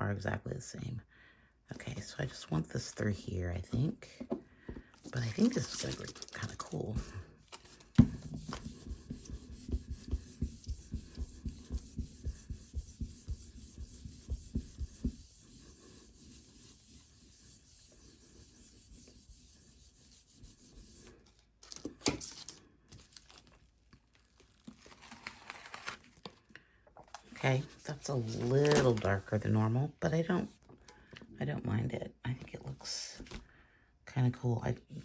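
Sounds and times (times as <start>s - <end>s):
paper rustling: 4.8s - 6.8s, 21.0s - 26.4s, 27.1s - 29.4s
hand rubbing paper: 7.5s - 21.3s.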